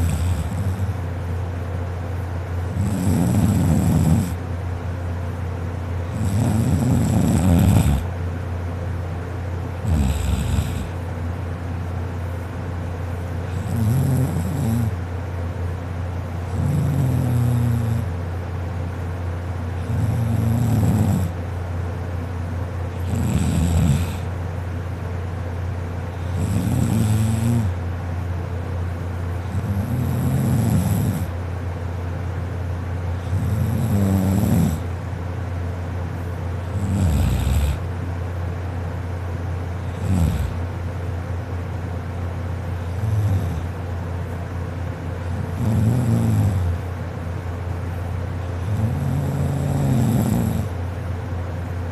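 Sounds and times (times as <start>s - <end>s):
person snoring: 0.0s - 1.0s, 2.7s - 4.4s, 6.1s - 8.1s, 9.8s - 11.0s, 13.5s - 15.0s, 16.5s - 18.1s, 19.8s - 21.4s, 23.0s - 24.3s, 26.3s - 27.8s, 29.5s - 31.3s, 33.3s - 34.9s, 36.7s - 37.8s, 39.9s - 40.6s, 42.9s - 43.7s, 45.4s - 46.8s, 48.6s - 50.8s
steady low hum: 0.0s - 51.9s.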